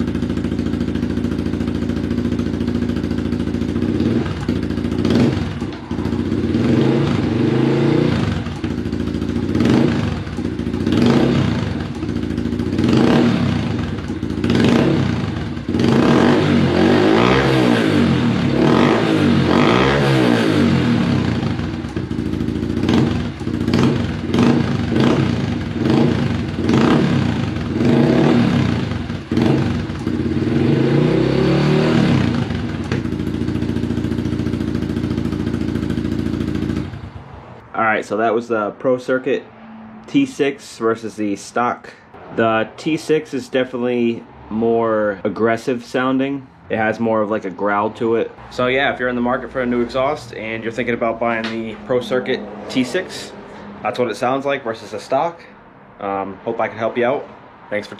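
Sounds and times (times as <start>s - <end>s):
motorcycle engine revving: 0.0s - 37.7s, 47.6s - 55.2s.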